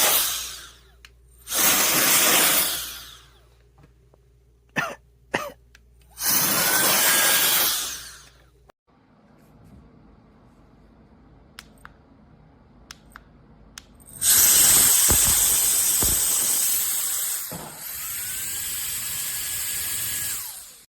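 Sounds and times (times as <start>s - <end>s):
air duster rush and whine: 14.2s - 18.0s.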